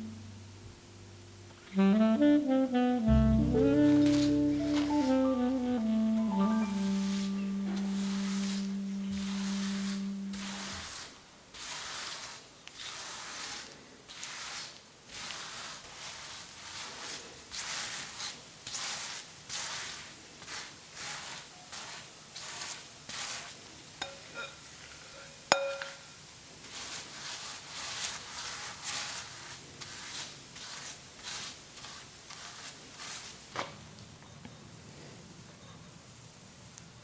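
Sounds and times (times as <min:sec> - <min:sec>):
rubbing or scraping strokes: 0:03.0 - 0:23.6, 0:26.6 - 0:33.5.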